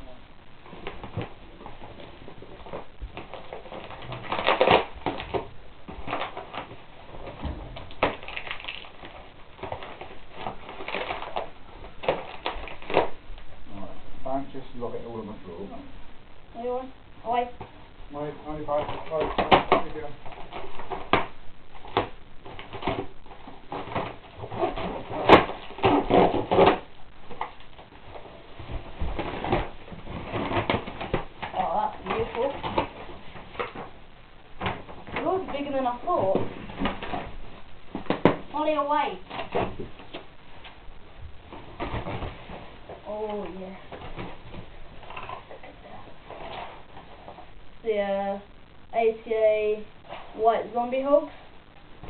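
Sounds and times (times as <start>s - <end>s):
packing tape tearing: 2.6s - 13.2s, 18.7s - 28.2s, 28.8s - 34.0s.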